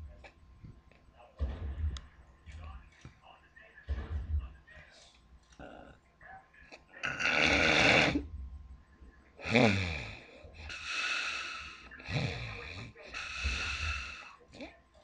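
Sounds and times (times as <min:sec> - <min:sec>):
woman snoring loudly: 0:07.1 - 0:08.2, 0:09.4 - 0:10.2.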